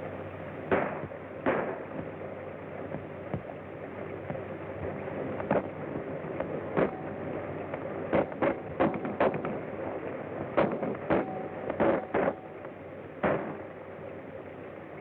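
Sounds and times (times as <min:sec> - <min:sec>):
old recording hiss: 0:00.0 - 0:15.0
gunshots: 0:00.7 - 0:01.9, 0:10.6 - 0:12.4, 0:13.2 - 0:13.6.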